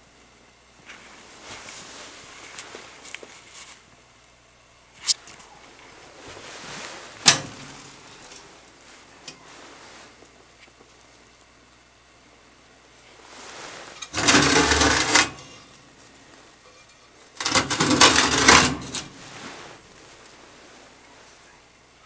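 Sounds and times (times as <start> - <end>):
metallic clattering and rattling: 14.0 - 15.6, 16.9 - 19.1.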